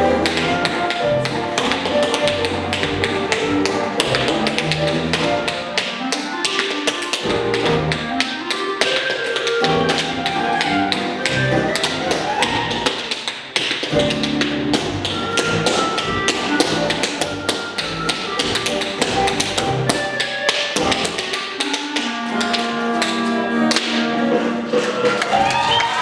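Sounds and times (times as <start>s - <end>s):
instrumental music: 0.0s - 26.0s.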